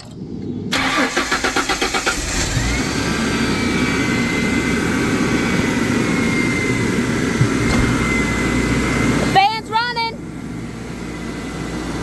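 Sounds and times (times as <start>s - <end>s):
engine cranking on starter: 0.0s - 9.4s
engine running: 0.0s - 12.0s.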